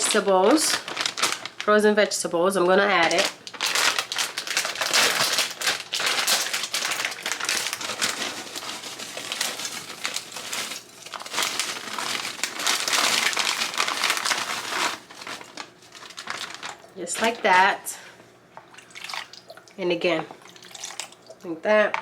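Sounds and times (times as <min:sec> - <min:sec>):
frozen vegetables pouring out: 0:00.0 - 0:01.7, 0:03.0 - 0:17.6
plastic bag crinkling: 0:00.0 - 0:01.9, 0:02.5 - 0:17.8.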